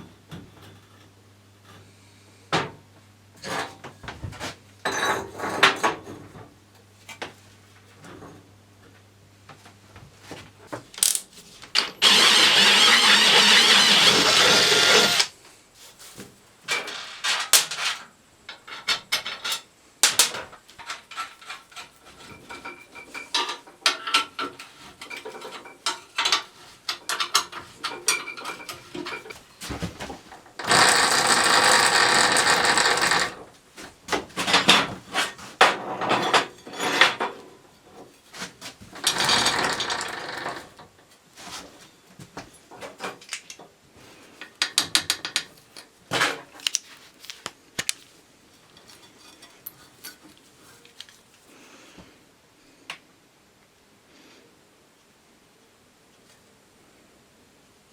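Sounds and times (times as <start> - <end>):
hand tools clicking and knocking: 11.0 - 15.3, 30.6 - 33.4, 44.5 - 48.0
loud rushing tool noise: 11.8 - 15.3, 30.6 - 33.4.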